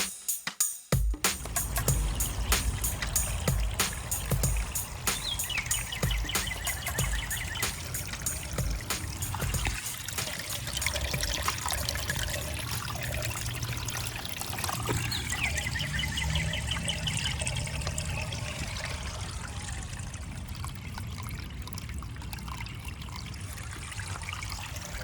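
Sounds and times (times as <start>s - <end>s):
water trickling over rocks: 1.4s - 25.0s.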